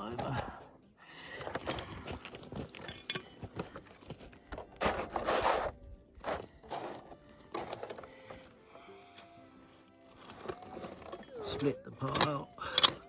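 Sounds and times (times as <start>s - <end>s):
scraping of soil and gravel: 1.2s - 8.5s.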